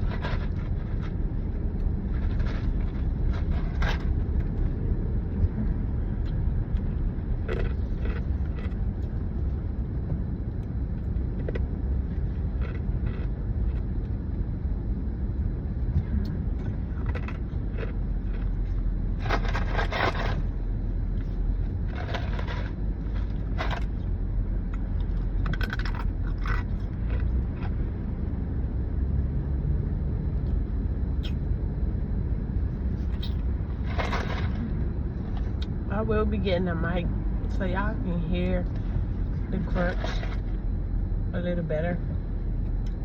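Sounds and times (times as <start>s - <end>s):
road noise inside car: 0.0s - 43.0s
ice being chewed: 16.9s - 24.1s, 24.7s - 27.8s.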